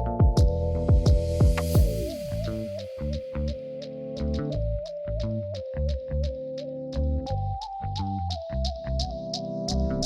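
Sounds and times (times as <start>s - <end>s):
keyboard melody: 0.0s - 10.0s
stepping bass line: 0.0s - 10.0s
hi-hat ticking: 0.2s - 4.6s.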